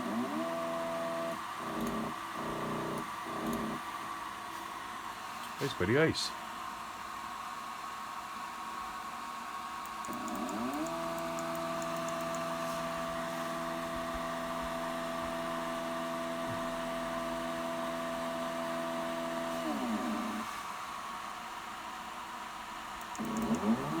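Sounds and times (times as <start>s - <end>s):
stepper motor whine: 23.2s - 24.0s.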